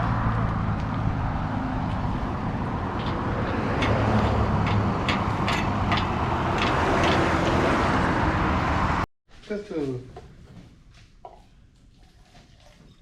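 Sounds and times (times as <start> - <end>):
truck engine running: 0.0 - 9.1
road noise: 0.0 - 11.1.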